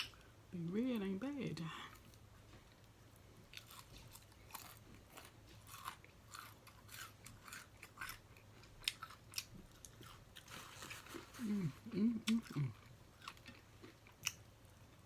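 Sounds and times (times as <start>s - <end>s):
person chewing close to microphone: 3.5s - 14.4s.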